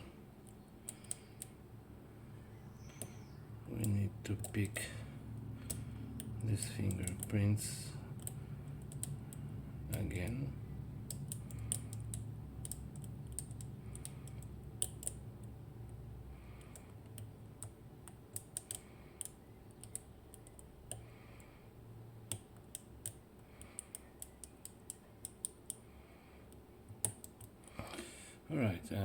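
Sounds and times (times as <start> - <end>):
low hum: 0.0 - 22.3.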